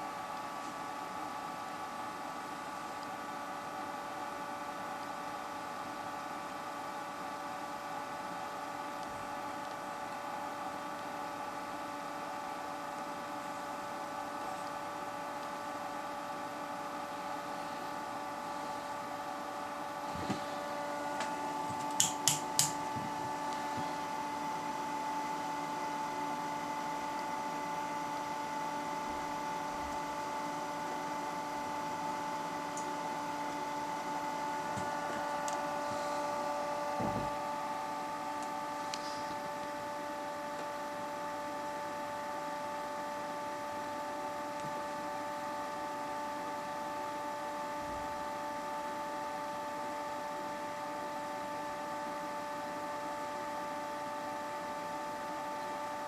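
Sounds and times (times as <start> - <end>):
electrical hum: 0.0 - 56.0
sharp clicks: 21.8 - 22.8.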